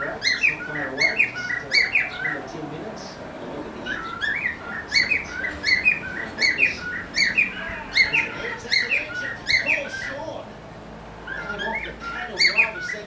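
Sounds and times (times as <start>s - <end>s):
cockatiel whistled chirps: 11.3s - 13.0s.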